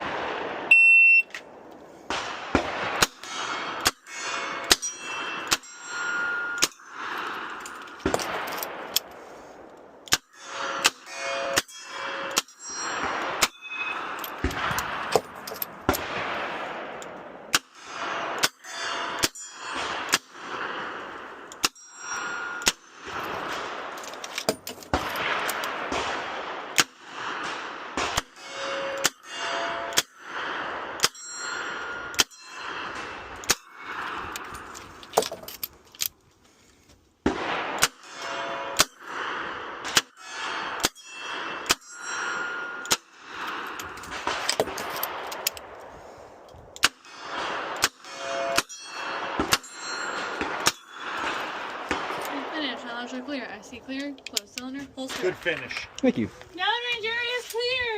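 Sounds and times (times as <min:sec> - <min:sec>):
steel targets ringing: 0:03.2 - 0:08.8, 0:10.3 - 0:17.1, 0:17.8 - 0:26.1, 0:28.3 - 0:35.4, 0:37.5 - 0:45.2, 0:47.0 - 0:53.9.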